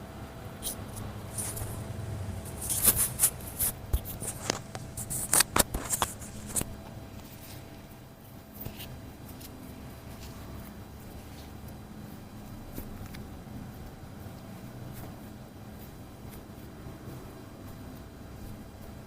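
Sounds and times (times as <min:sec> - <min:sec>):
quiet shuffling: 0:00.7 - 0:07.9
clothing rustling: 0:01.0 - 0:07.7.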